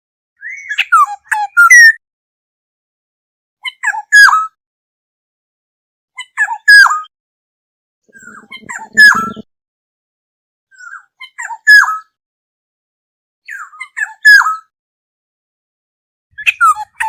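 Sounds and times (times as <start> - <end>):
bird calling: 8.1 - 9.5.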